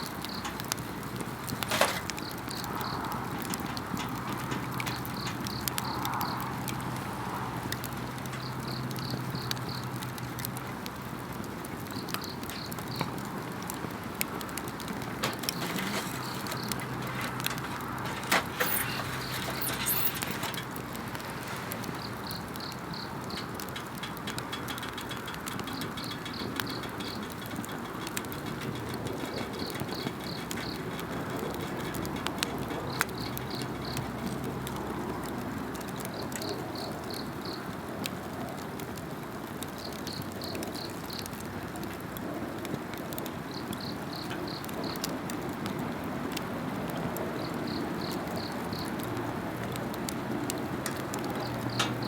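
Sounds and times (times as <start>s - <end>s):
campfire crackling and popping: 0.0s - 52.0s
insects trilling: 15.2s - 20.8s.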